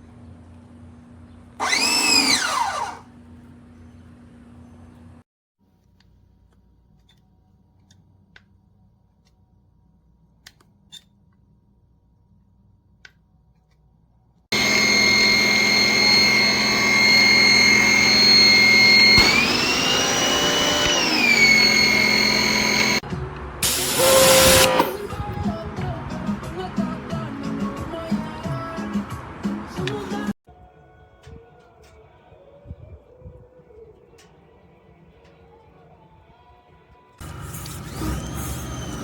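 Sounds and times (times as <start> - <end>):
pressure washer whine: 1.6 - 3.0, 14.5 - 23.0, 23.6 - 25.3, 37.2 - 39.0.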